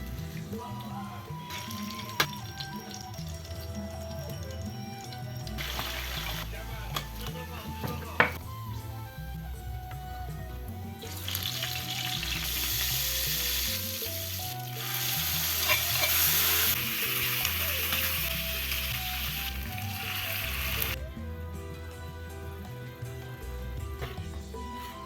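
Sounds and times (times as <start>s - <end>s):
food sizzling in oil: 0.0s - 8.4s, 11.0s - 21.0s
background music: 0.0s - 25.0s
stirring in a pan: 15.5s - 16.6s.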